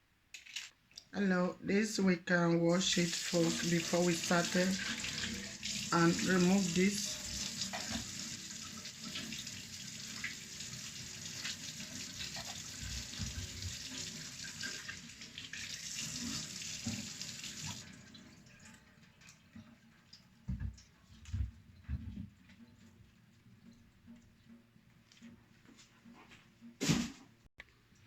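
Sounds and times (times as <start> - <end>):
tap water running into sink: 2.9 - 22.9.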